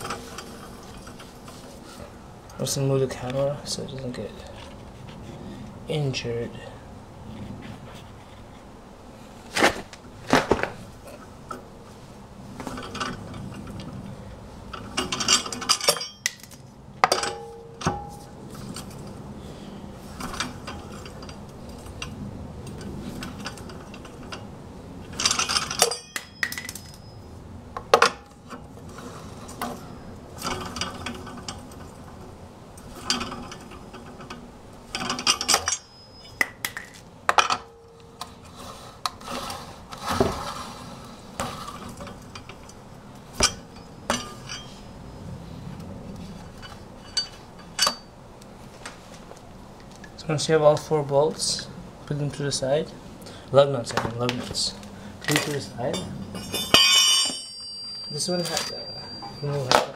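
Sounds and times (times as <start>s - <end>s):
lug nuts clinking and rattling: 14.7s - 19.2s, 20.1s - 39.2s, 41.4s - 45.1s, 46.3s - 48.2s, 53.9s - 59.9s
sharp metallic clanks: 14.8s - 19.0s, 25.1s - 28.7s, 32.8s - 38.4s, 41.4s - 45.1s, 46.6s - 48.2s, 55.3s - 59.9s.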